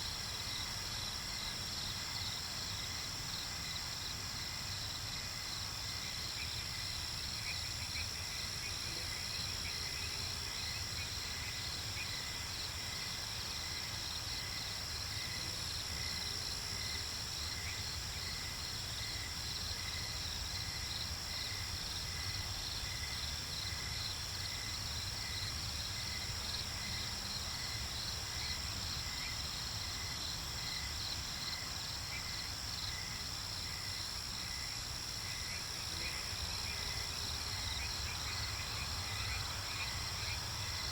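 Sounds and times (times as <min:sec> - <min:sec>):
insects trilling: 0:00.0 - 0:40.9.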